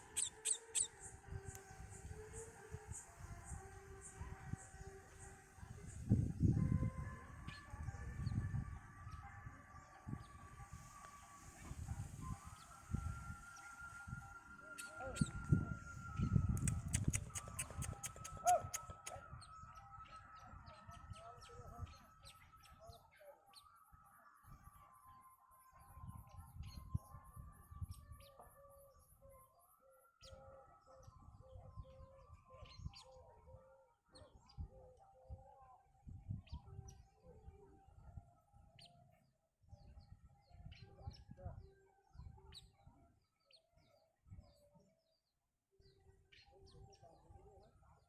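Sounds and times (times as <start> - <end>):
small birds chirping: 0.0 - 6.4, 9.7 - 19.6.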